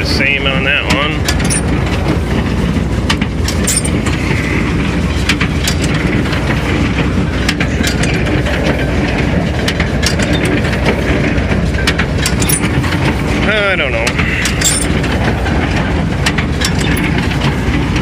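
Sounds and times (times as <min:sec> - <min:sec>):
hay baler clicking and clanking: 0:00.0 - 0:18.0
tractor engine running: 0:00.0 - 0:18.0.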